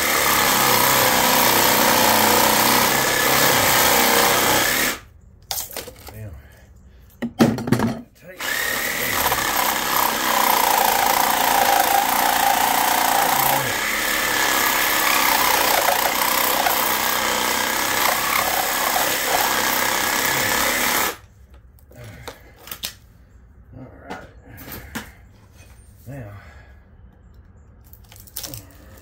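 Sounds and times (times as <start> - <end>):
handheld power tool running: 0.0 - 5.0, 8.4 - 21.2.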